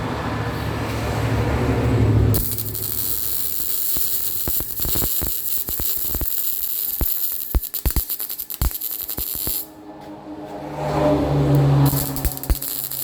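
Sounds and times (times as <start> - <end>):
welding arc hissing and crackling: 2.4 - 9.7, 11.5 - 13.0.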